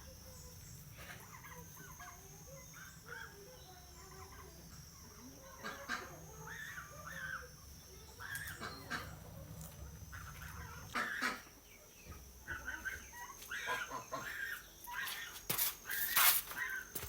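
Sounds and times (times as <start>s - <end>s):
poultry clucking: 5.4s - 17.0s.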